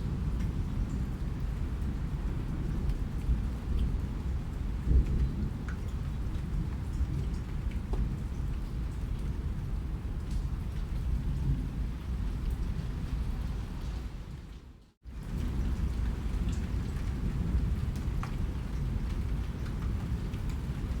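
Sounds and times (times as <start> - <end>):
steady rain: 0.0 - 21.0
raindrops ticking: 5.0 - 11.4, 15.2 - 21.0.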